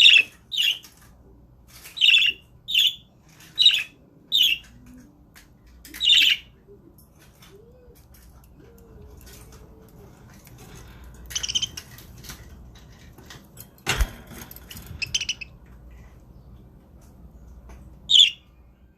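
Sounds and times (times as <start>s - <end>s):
budgerigars chirping: 11.3s - 11.8s, 15.0s - 15.5s.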